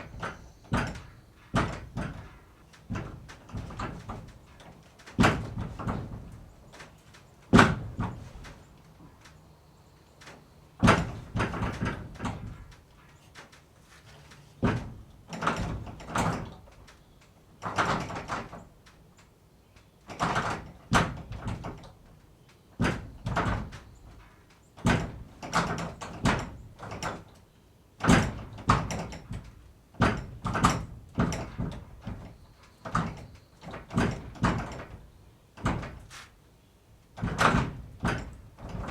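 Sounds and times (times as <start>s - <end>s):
barn door banging shut: 0.0s - 6.9s, 7.5s - 8.6s, 10.8s - 12.8s, 14.6s - 16.9s, 17.6s - 18.6s, 20.1s - 22.1s, 22.8s - 27.4s, 28.0s - 36.3s, 37.1s - 38.9s
barn door scraping and rattling: 0.0s - 9.5s, 10.2s - 19.3s, 20.0s - 38.9s.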